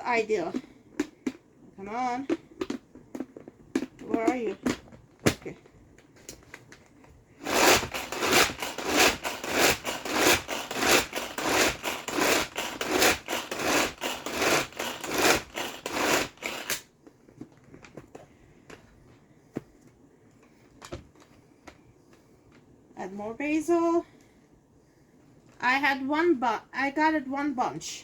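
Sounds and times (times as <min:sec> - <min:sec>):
pull-cord chopper whirring rasp: 0:07.4 - 0:16.8.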